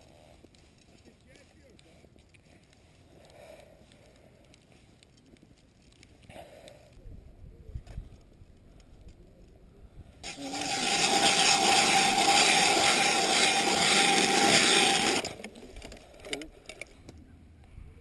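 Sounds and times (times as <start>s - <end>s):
machine whirring and scraping: 10.2s - 15.5s.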